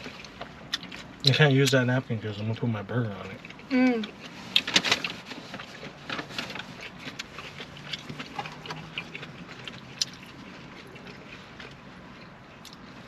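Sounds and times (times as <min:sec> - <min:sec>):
person chewing: 0:00.0 - 0:13.0
wet mouth clicks and smacks: 0:07.2 - 0:11.2.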